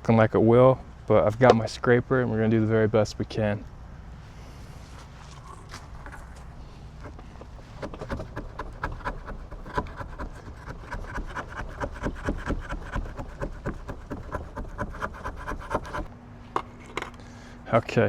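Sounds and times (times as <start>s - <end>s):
scraper scraping foam: 5.3s - 16.1s.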